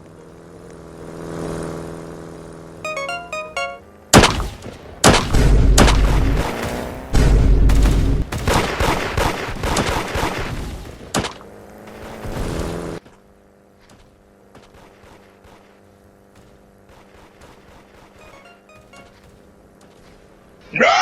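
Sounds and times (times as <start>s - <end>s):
sharp gunshot bang: 4.1s - 10.3s
barrage of shots and booms: 4.2s - 10.9s
deep rumble: 5.3s - 6.5s, 7.2s - 8.3s.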